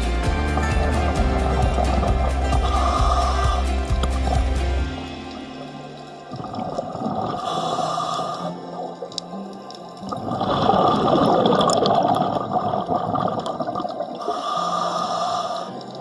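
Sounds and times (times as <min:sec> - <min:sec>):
exhaled bubbles rushing: 0:06.3 - 0:09.0, 0:10.0 - 0:14.5
diver breathing in hiss: 0:07.4 - 0:08.6, 0:14.2 - 0:15.8.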